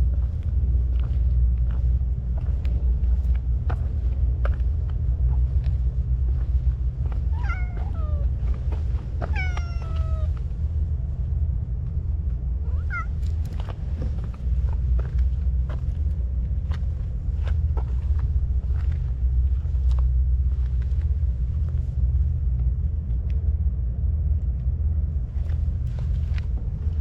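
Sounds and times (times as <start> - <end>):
steady low rumble: 0.0 - 27.0
cat meowing: 7.3 - 8.3, 9.2 - 10.4, 12.6 - 13.2.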